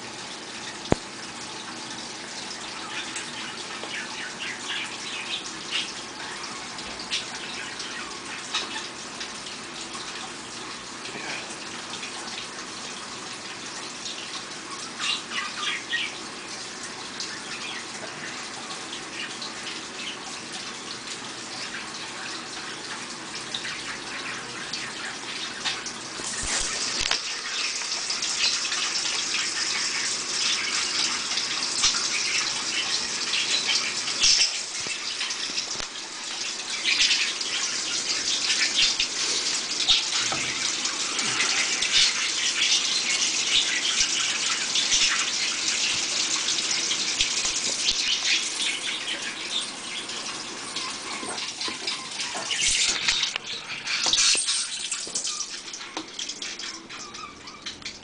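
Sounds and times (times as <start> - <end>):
water sloshing in washing machine: 0.0 - 58.0.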